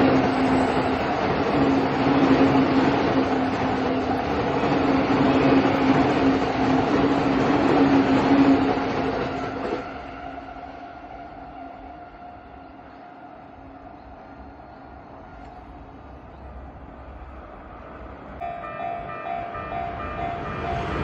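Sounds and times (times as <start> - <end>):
train wheels on rails: 0.0 - 21.0.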